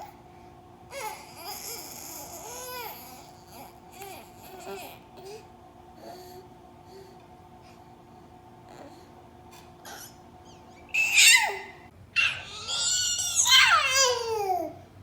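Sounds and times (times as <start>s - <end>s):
baby babbling: 11.0s - 14.8s.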